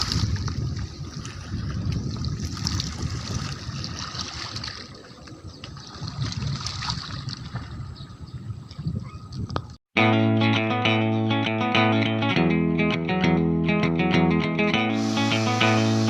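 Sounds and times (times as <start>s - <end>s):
water trickling in a stream: 0.0s - 7.8s.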